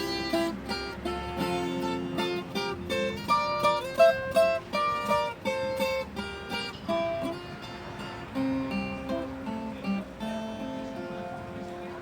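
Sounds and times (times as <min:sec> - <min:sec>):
plucked acoustic string instruments: 0:00.0 - 0:12.0.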